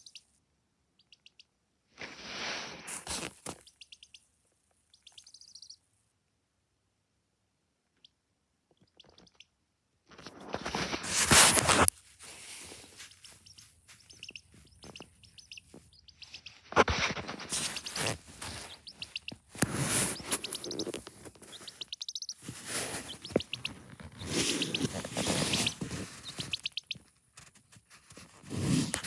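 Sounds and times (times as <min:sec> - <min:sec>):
chick peeping: 0:00.0 - 0:00.3, 0:01.0 - 0:01.6, 0:02.9 - 0:04.3, 0:04.9 - 0:05.9, 0:07.9 - 0:09.6, 0:12.9 - 0:27.5.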